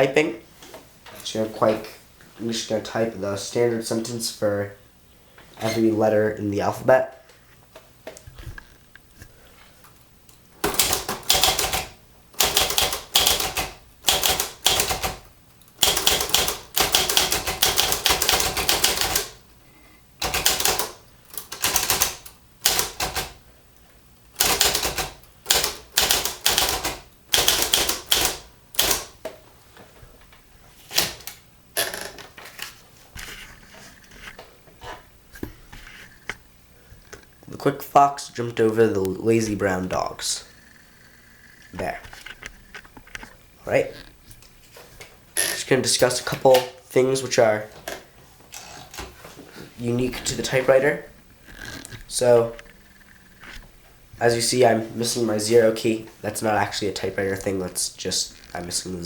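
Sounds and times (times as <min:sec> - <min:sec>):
manual typewriter keystrokes: 0:10.6 - 0:19.4, 0:20.2 - 0:23.4, 0:24.4 - 0:29.2, 0:30.9 - 0:32.4.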